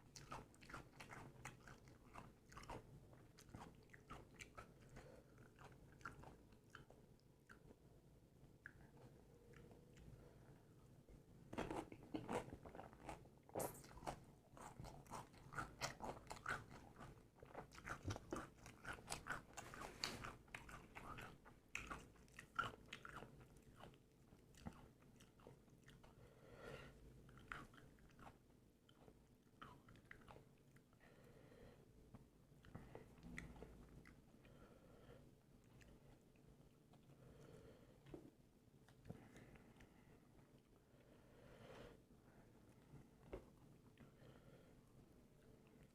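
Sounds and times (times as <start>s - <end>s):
crunching and chewing crisp food: 0.0s - 7.9s, 11.6s - 31.3s.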